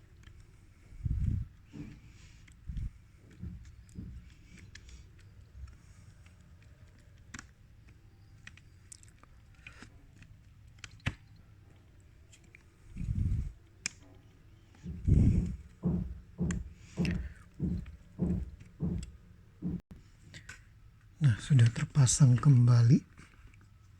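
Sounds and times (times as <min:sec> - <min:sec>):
light clicks of small parts: 0:00.0 - 0:14.9, 0:20.1 - 0:23.9
dull low knocks: 0:02.7 - 0:04.3, 0:14.8 - 0:19.8.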